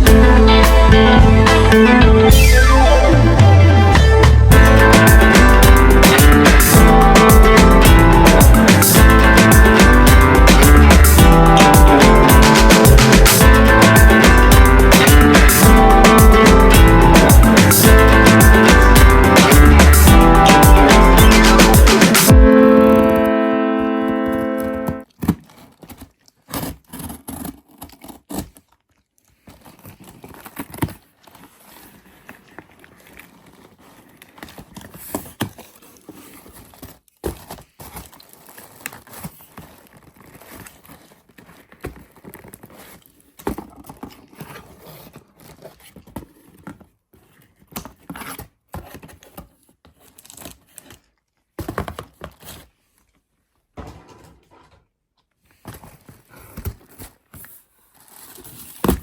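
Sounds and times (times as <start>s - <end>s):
crinkling: 24.3s - 59.0s
objects knocking and scraping: 53.8s - 54.9s.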